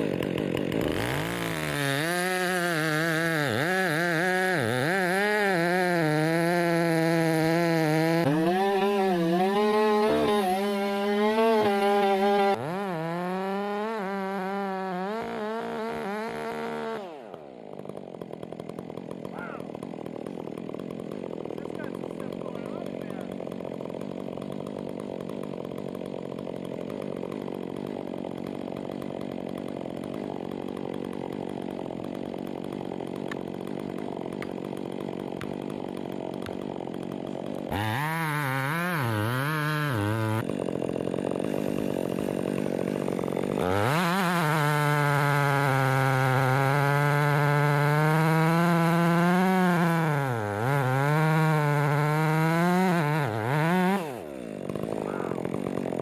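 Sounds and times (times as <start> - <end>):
chainsaw cutting wood: 0.0 - 56.0.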